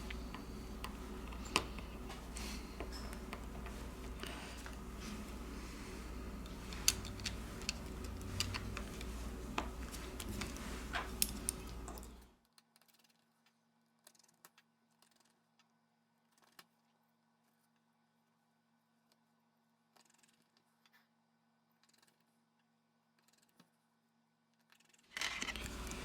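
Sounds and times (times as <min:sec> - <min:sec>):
low steady hum: 0:00.0 - 0:12.4, 0:25.2 - 0:26.0
small clicks and taps of tools: 0:00.0 - 0:15.7.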